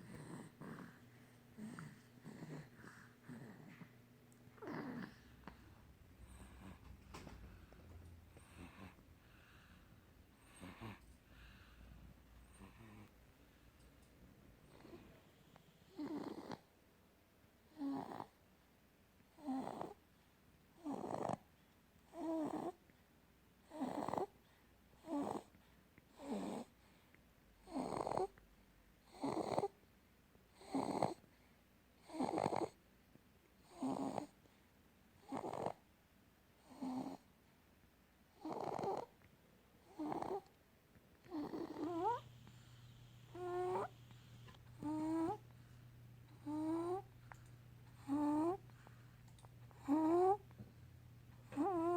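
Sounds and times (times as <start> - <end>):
baby snoring: 0.0 - 3.9, 4.6 - 7.4, 8.3 - 9.8, 10.4 - 11.7, 12.4 - 13.1, 14.7 - 15.1, 15.8 - 16.7, 17.7 - 18.4, 19.3 - 20.0, 20.8 - 21.4, 22.1 - 22.8, 23.6 - 24.4, 25.0 - 25.5, 26.1 - 26.7, 27.6 - 28.4, 29.0 - 29.8, 30.6 - 31.2, 32.0 - 32.8, 33.6 - 34.4, 35.2 - 35.8, 36.6 - 37.3, 38.3 - 39.1, 39.8 - 40.5, 41.2 - 45.5, 46.3 - 47.2, 47.9 - 48.8, 49.7 - 50.5, 51.4 - 51.9.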